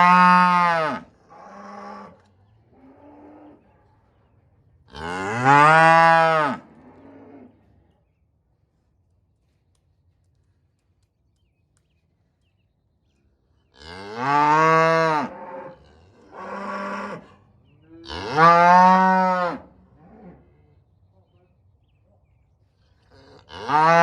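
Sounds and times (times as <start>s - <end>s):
cow mooing: 4.9s - 7.5s, 13.8s - 17.3s, 17.9s - 20.4s.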